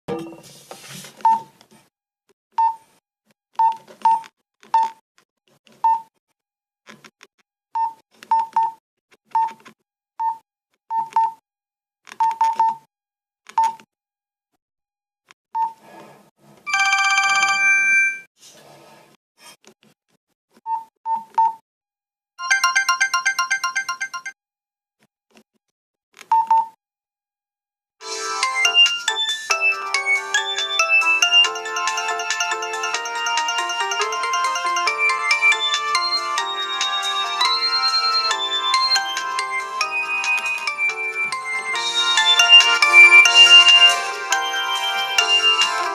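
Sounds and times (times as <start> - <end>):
phone keypad clicks and beeps: 12.2 - 12.9
fast-pulsing ringtone: 16.7 - 18.3, 22.4 - 24.4, 28.0 - 45.9
polyphonic ringtone: 16.7 - 18.3, 22.4 - 24.4, 28.0 - 45.9.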